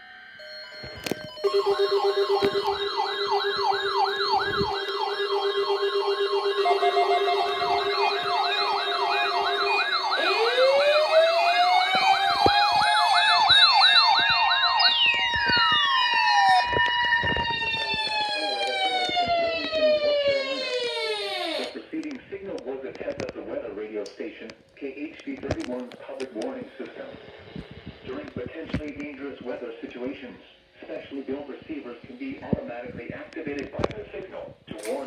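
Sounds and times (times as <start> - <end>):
rising siren tones: 0.4 - 21.8
up-and-down siren wail: 0.4 - 21.8.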